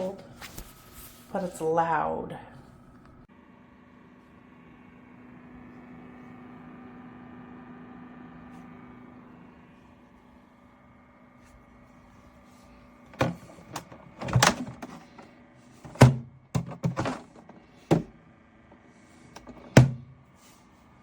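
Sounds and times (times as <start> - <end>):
fridge cooling fan humming: 0.0 - 21.0
thunks and clicks of handling: 13.1 - 18.2, 19.3 - 20.1.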